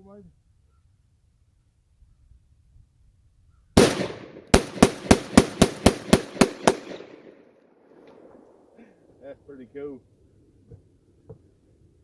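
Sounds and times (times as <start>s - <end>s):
shotgun shots: 3.8s - 7.5s.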